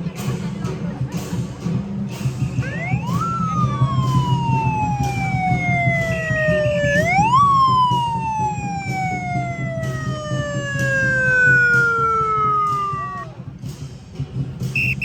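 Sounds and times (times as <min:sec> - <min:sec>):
percussion beat: 0:00.0 - 0:15.0
siren wailing: 0:02.6 - 0:13.4.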